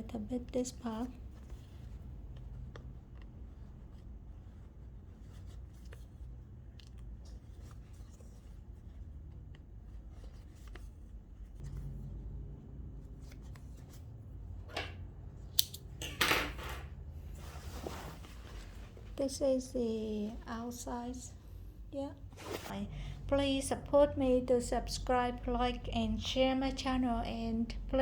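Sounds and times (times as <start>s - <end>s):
handling denim and thread: 0.0s - 12.2s, 13.0s - 22.8s
low steady hum: 0.0s - 28.0s
scissors snipping thread: 15.5s - 15.9s.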